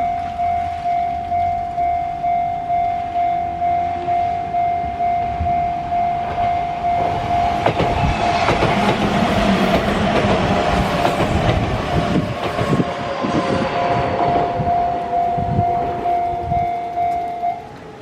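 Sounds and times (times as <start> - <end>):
level-crossing alarm bell ringing: 0.0 - 8.5, 14.1 - 18.0
train wheels clacking over rail joints: 6.3 - 12.9.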